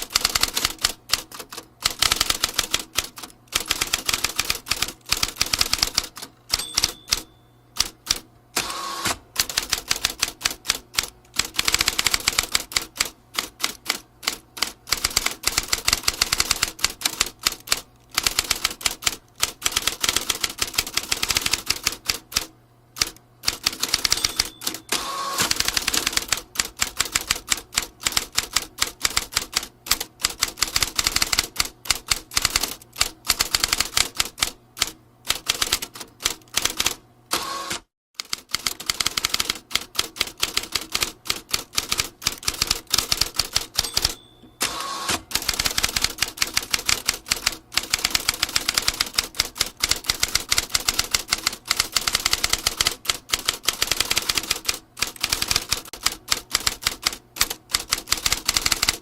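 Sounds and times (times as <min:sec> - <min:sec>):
typewriter key clacks: 0:38.2 - 0:44.4.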